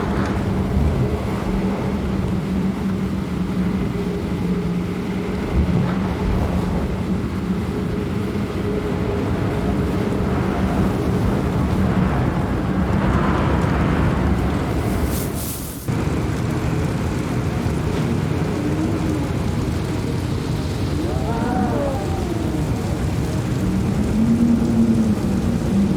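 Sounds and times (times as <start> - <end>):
wind buffeting microphone: 0.0 - 25.9
constant low hum: 15.9 - 25.9.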